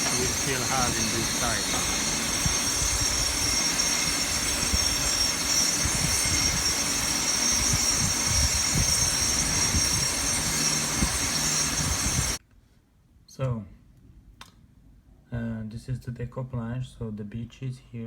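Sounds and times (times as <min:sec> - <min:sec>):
mechanical whine: 0:00.0 - 0:12.4.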